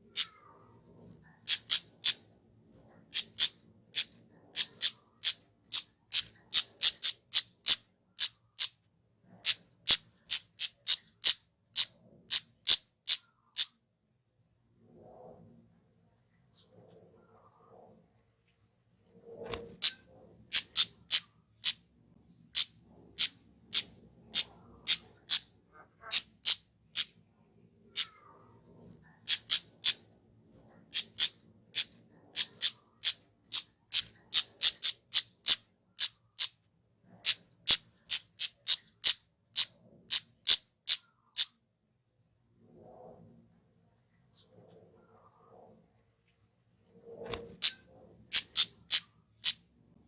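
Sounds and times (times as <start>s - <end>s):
bird high chip notes: 48.4s - 49.6s.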